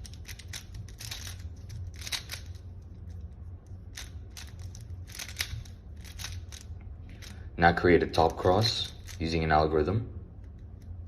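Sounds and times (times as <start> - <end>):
faint low hum: 0.0 - 11.0
puzzle cube clicks: 3.9 - 7.3.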